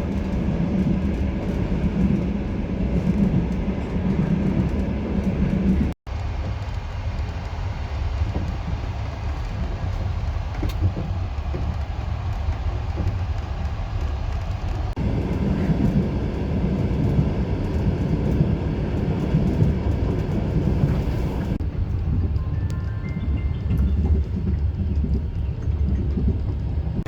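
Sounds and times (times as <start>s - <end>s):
train wheels rumbling: 0.0s - 27.0s.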